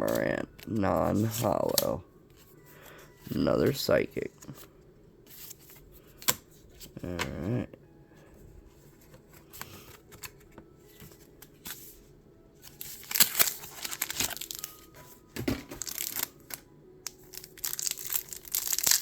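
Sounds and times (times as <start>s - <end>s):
cards shuffling: 0.0s - 2.5s, 12.6s - 19.0s
foil wrappers crinkling: 12.6s - 19.0s.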